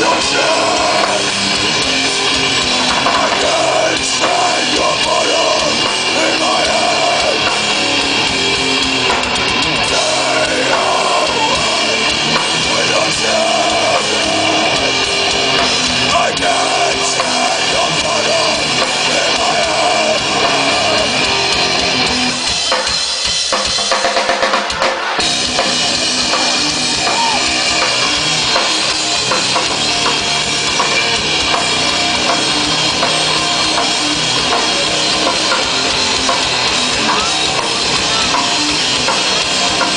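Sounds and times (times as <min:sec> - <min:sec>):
drum kit: 0:00.0 - 0:39.9
rock band playing loudly: 0:00.0 - 0:39.9.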